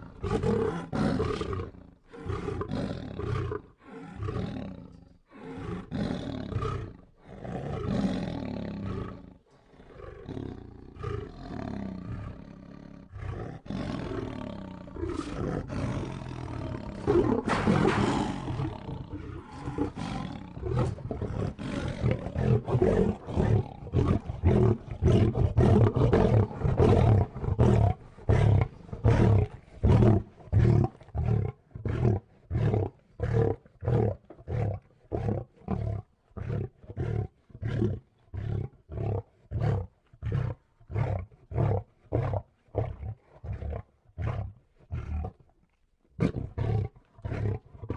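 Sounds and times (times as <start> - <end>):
lion roaring: 0.0 - 45.4
short roaring grunts: 13.9 - 27.9.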